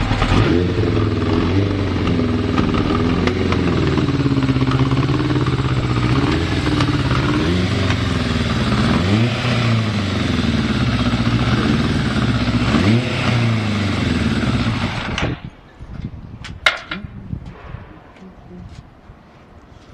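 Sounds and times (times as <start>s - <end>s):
motorcycle engine idling unevenly: 0.0s - 15.4s
engine revving: 0.0s - 15.5s.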